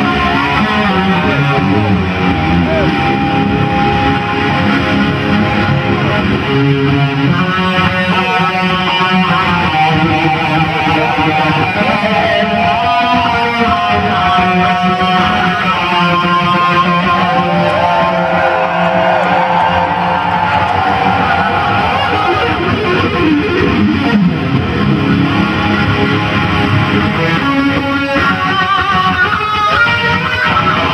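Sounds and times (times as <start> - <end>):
backing music: 0.0 - 30.9
distorted electric guitar: 0.0 - 30.9.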